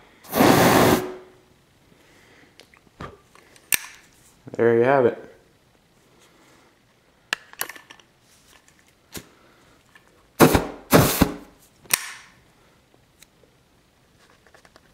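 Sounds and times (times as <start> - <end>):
aerosol spray bursts through flame: 0.2 - 1.3, 10.4 - 11.4.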